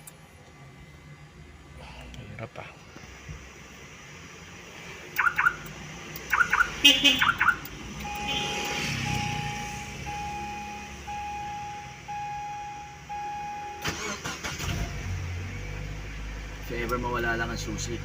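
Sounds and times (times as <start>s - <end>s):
car alarm chirps: 5.2s - 5.7s, 6.3s - 14.4s
steady single-pitched beep: 6.3s - 13.8s.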